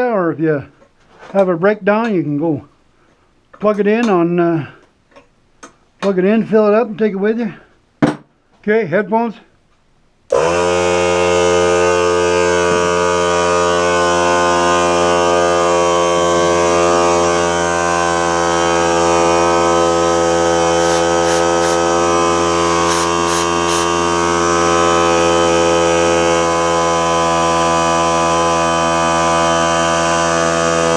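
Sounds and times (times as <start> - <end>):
electric air compressor humming: 10.3 - 30.9.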